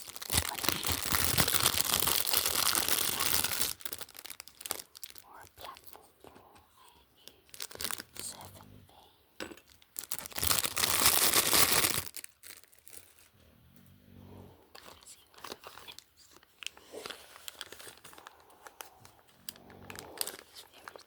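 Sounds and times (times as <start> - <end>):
packaging ripping: 0.0 - 5.5, 7.5 - 8.2, 9.7 - 13.3, 16.6 - 21.0
wrapping rustling and clicking: 0.0 - 6.0, 7.5 - 8.2, 9.6 - 13.4, 14.7 - 21.0.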